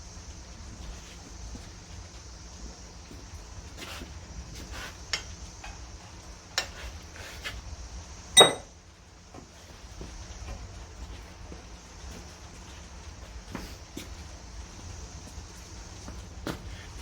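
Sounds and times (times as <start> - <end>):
metal tools clinking: 8.4 - 8.7
ringing metal clang: 8.4 - 8.7.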